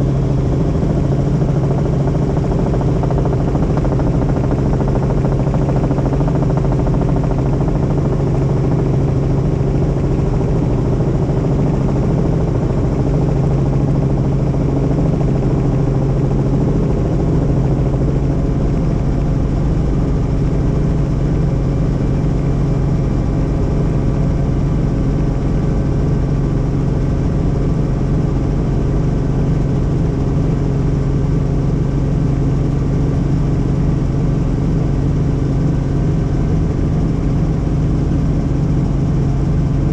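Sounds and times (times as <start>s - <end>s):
helicopter engine and rotor: 0.0s - 39.9s.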